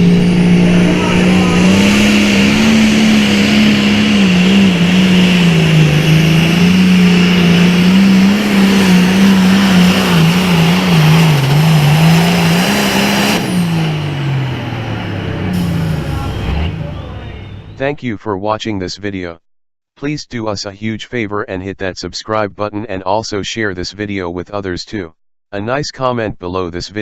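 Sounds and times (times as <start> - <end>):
tractor diesel engine revving: 0.0 - 18.0.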